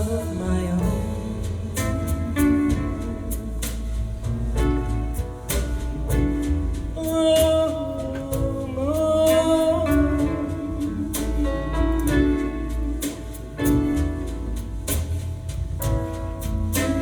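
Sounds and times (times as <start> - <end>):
jazz ballad over hi-fi: 0.0 - 17.0.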